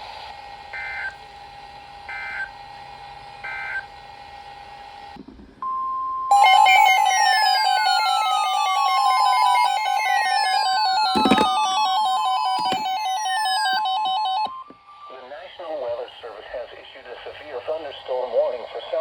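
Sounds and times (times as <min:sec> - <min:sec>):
steady alert tone: 0:06.3 - 0:14.5.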